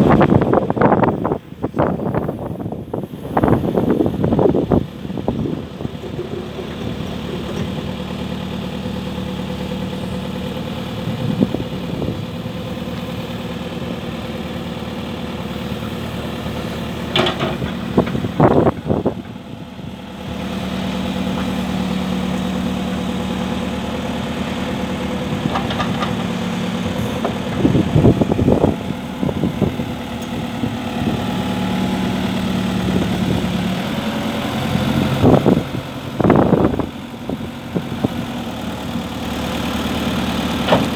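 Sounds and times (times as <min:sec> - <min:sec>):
diesel engine idling: 0:00.0 - 0:40.9
sharp knocks and clunks: 0:40.6 - 0:40.9.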